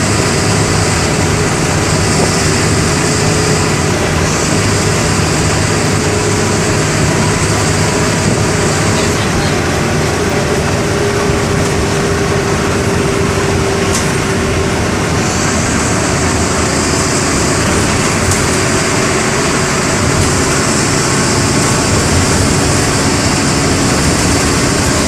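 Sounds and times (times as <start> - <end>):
bus engine running: 0.0 - 25.0.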